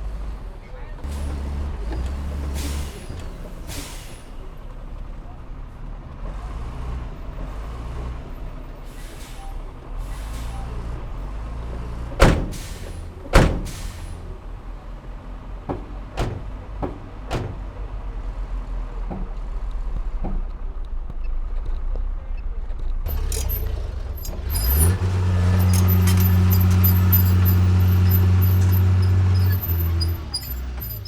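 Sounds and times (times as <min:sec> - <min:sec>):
heavy machinery diesel engine: 0:00.0 - 0:20.4, 0:23.1 - 0:31.0
loud metallic clanks: 0:12.2 - 0:14.2, 0:15.6 - 0:17.9, 0:23.1 - 0:31.0.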